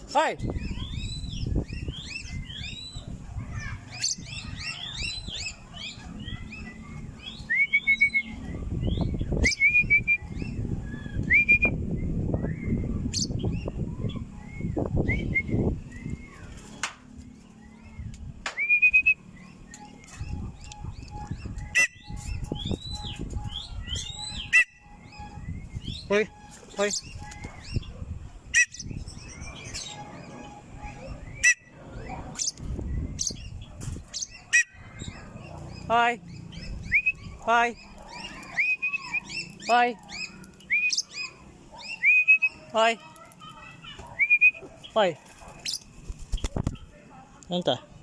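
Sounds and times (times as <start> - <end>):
cockatiels chirping: 0.4 - 11.3, 19.4 - 28.0, 28.6 - 46.8.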